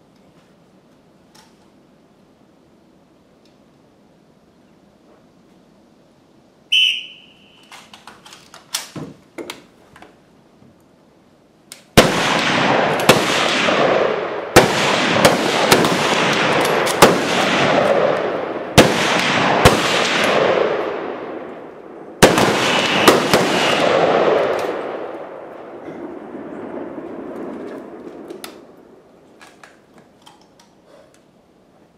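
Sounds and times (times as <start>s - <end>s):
whistle blast: 6.7s - 7.7s
rifle shots echoing: 12.0s - 29.7s.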